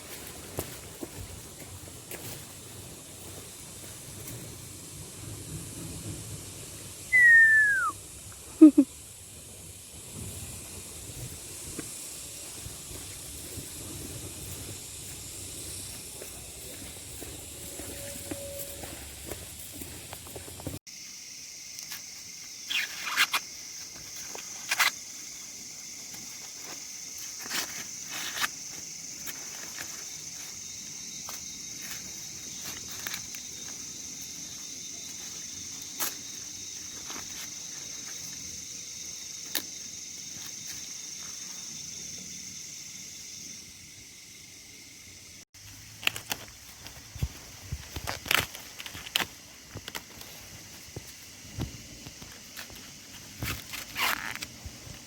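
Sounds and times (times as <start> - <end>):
insect drone: 0.0 - 55.0
sharp snaps and rustles: 21.7 - 25.1, 26.1 - 30.6, 45.6 - 55.0.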